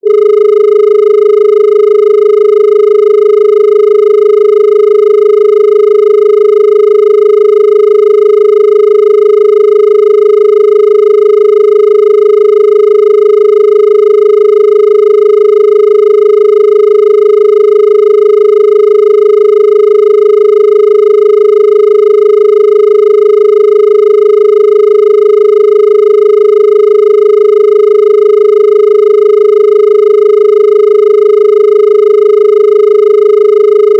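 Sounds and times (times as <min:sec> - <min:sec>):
telephone dial tone: 0:00.0 - 0:33.9.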